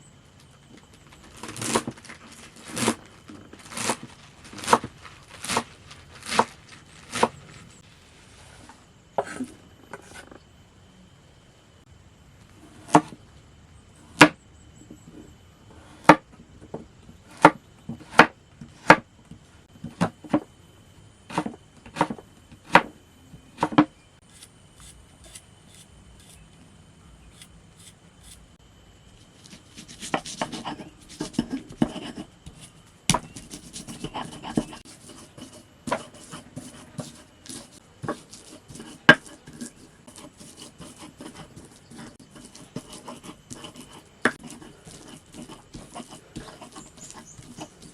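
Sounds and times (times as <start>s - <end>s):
rustling handling: 0.9s - 8.8s.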